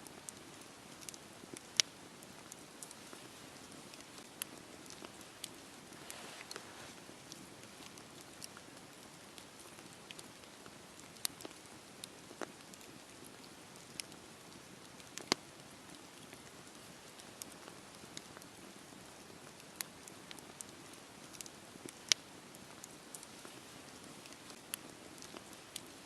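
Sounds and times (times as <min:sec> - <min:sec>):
wood crackling and popping: 0:00.0 - 0:26.0
hiss of flames: 0:05.8 - 0:07.1.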